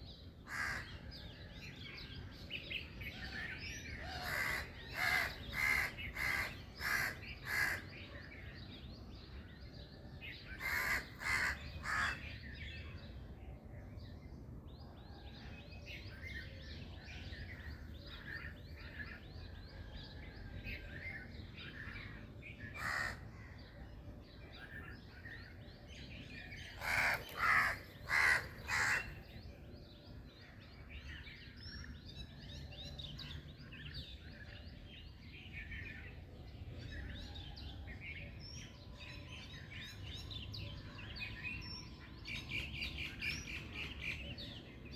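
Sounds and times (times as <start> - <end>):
loud bird calling: 0.5 - 1.0, 4.0 - 7.9, 10.5 - 12.3, 22.8 - 23.2, 26.6 - 29.3.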